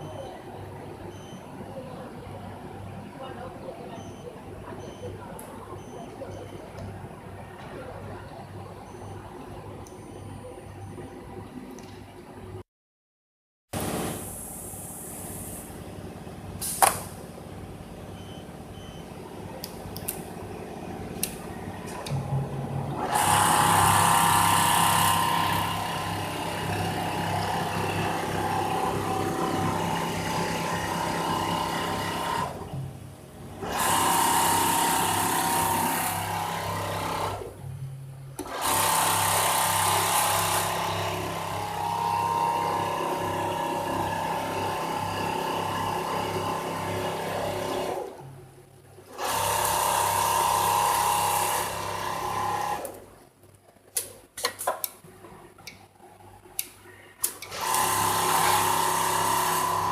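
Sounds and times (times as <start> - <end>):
sewing machine running: 22.9 - 32.6, 33.6 - 37.5, 38.4 - 48.2, 49.1 - 53.0, 57.4 - 59.9.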